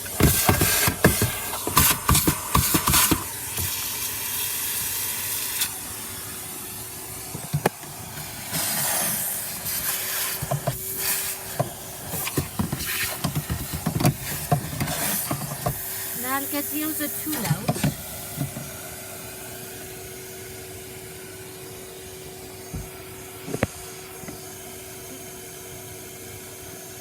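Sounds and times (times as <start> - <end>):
vacuum cleaner running: 0.0 - 27.0
nozzle knocking and clicking: 11.6 - 15.8.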